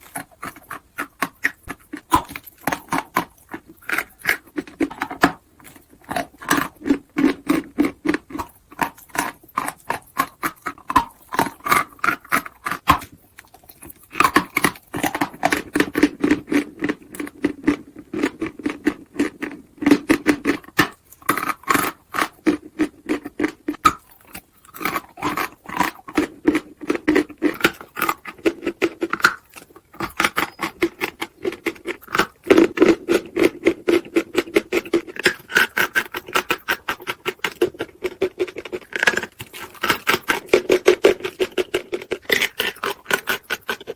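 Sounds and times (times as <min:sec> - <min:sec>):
chalk being crunched and chewed: 0:00.0 - 0:43.9.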